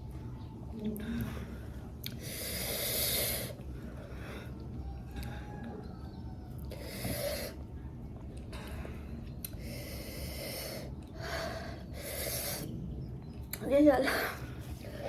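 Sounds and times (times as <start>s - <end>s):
person breathing hard: 1.1s - 5.8s.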